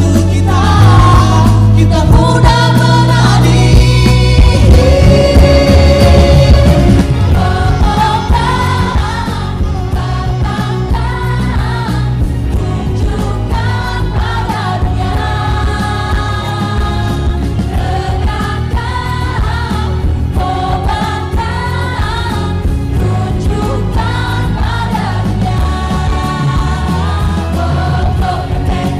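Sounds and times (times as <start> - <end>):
person singing: 0.0 - 10.8
instrumental backing with bass: 0.0 - 28.9.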